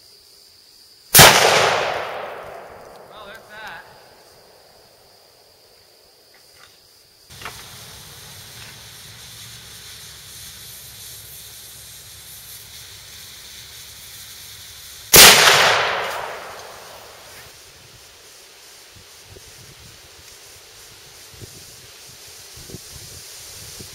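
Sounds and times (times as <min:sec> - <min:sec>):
steady background hiss: 0:00.0 - 0:23.9
loud blast with rolling echo: 0:01.2 - 0:03.7, 0:15.1 - 0:17.3.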